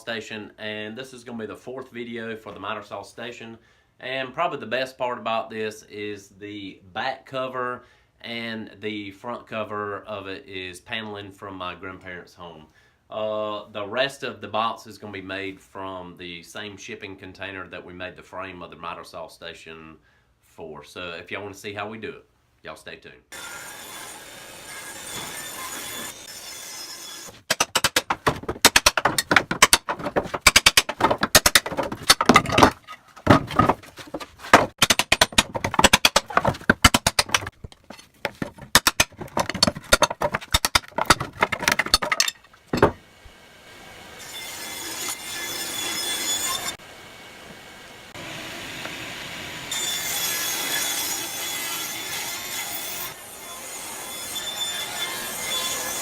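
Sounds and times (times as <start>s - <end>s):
power saw cutting: 23.3s - 37.6s, 43.7s - 56.0s.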